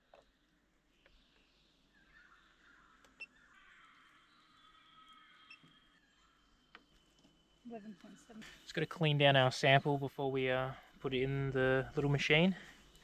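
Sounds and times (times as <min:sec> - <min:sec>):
faint high-pitched animal calls: 0:02.0 - 0:06.7.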